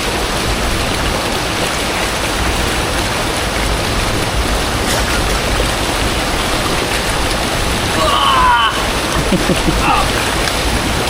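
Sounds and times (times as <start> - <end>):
rocky stream rushing: 0.0 - 11.0.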